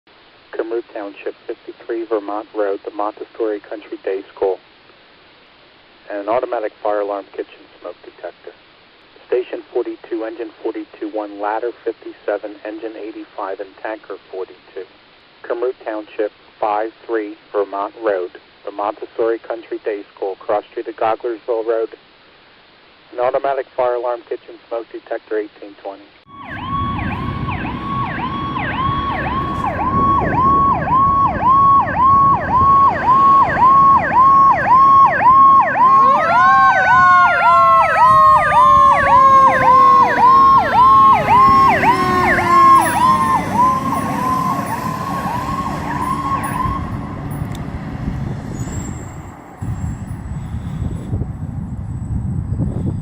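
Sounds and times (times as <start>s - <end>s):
electronic siren cycling rapidly: 26.3s - 47.7s
siren tone rising and falling: 26.3s - 50.0s
truck engine rumble: 26.3s - 53.0s.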